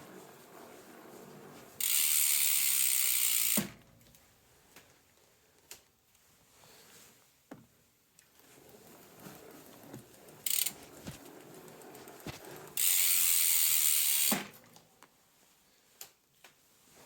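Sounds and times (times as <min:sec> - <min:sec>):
bicycle drivetrain rattling: 0:00.0 - 0:03.7, 0:08.7 - 0:14.4.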